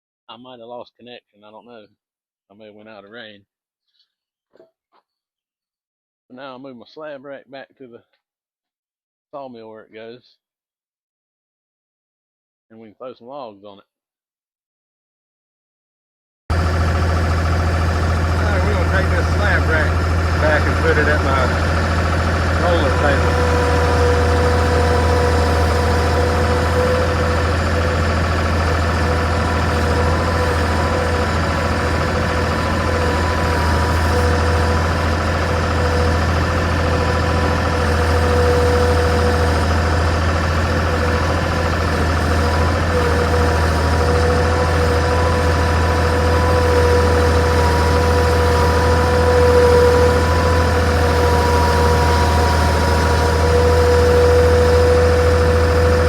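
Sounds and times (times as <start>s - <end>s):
steady whine: 16.5s - 38.2s
work machine engine running: 16.5s - 56.0s.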